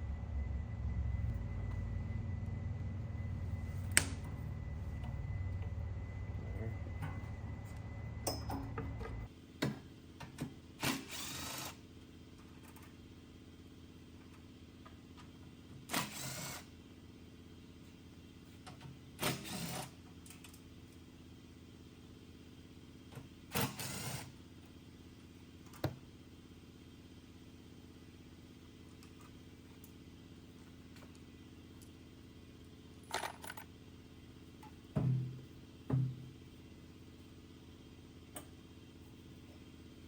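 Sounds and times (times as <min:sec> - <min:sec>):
steady low hum: 0:00.0 - 0:09.4.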